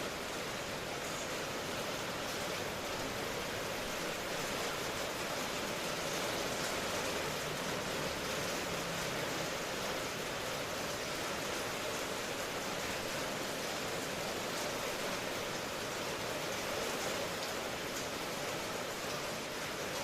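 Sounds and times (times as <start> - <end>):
steady rain: 0.0 - 20.0.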